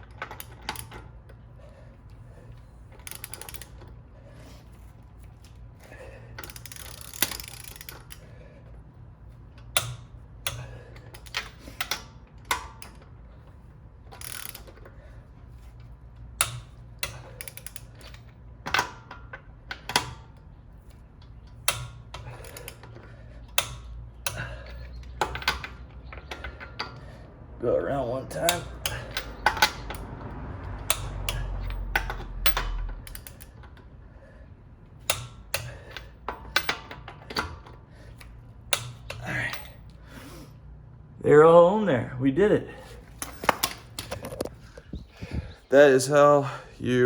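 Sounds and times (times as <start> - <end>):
torque wrench clicking: 0.0 - 1.4, 2.4 - 3.9, 5.2 - 8.3, 9.5 - 27.2, 28.3 - 30.1, 30.7 - 33.9, 34.9 - 40.0
steady low hum: 0.0 - 47.0.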